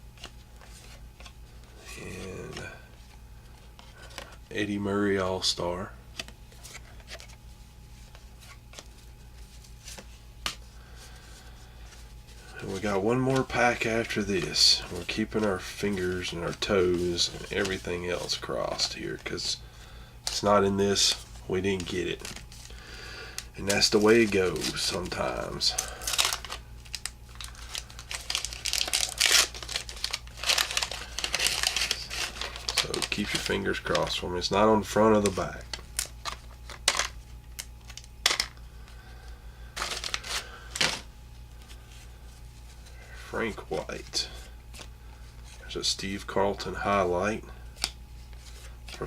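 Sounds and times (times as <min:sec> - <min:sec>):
steady low hum: 0:00.0 - 0:49.0
paper wrapper crinkling and tearing: 0:23.6 - 0:38.6, 0:39.7 - 0:41.8.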